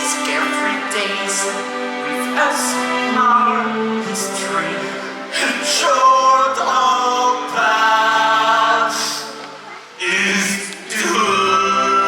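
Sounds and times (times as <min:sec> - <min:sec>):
choir singing held notes: 0:05.2 - 0:12.0.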